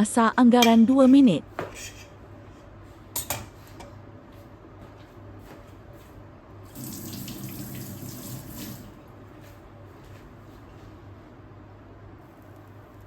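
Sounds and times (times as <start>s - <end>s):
water running from a tap: 6.7s - 9.0s.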